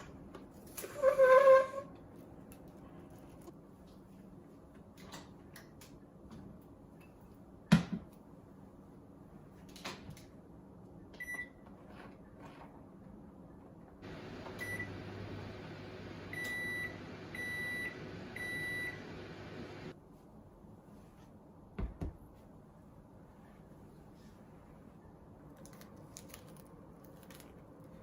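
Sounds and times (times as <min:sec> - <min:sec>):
microwave beeps: 0:11.2 - 0:11.6, 0:14.0 - 0:19.9
microwave oven humming: 0:14.0 - 0:19.9.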